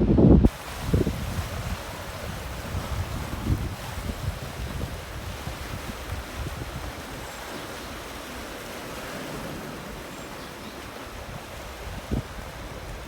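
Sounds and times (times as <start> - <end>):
sea surf washing on shore: 0.0 - 13.0
wind on microphone: 0.0 - 13.0.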